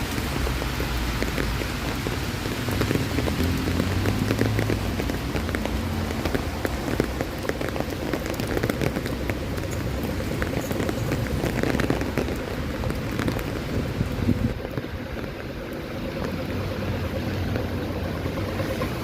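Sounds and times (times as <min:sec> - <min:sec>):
rain drops hitting: 0:00.0 - 0:19.0
low steady rumble: 0:04.8 - 0:19.0.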